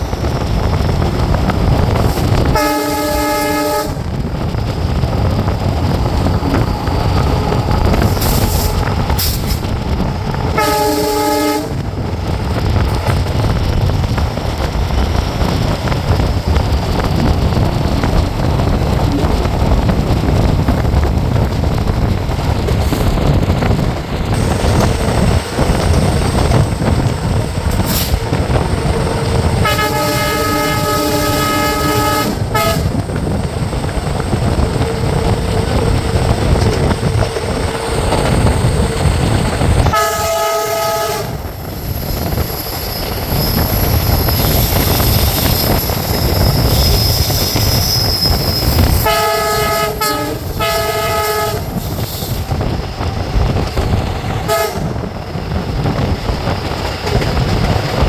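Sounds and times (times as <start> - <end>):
moving train running noise: 0.0 - 58.0
locomotive horn blasts: 2.5 - 4.0, 10.5 - 11.8, 29.6 - 33.0, 39.8 - 41.4, 49.0 - 51.8, 54.5 - 55.0.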